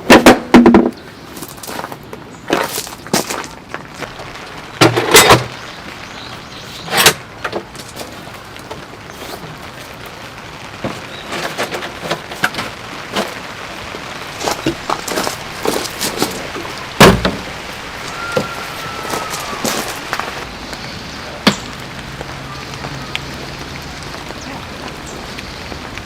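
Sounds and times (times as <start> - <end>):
steady rain hiss: 0.0 - 26.0
handling knocks and clatters: 6.9 - 13.4, 14.3 - 18.6.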